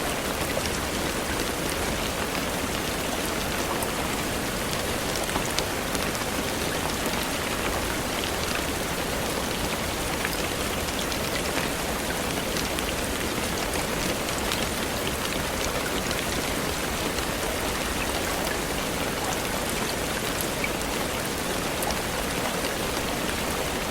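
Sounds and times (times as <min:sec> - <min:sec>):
rain falling on leaves: 0:00.0 - 0:23.9.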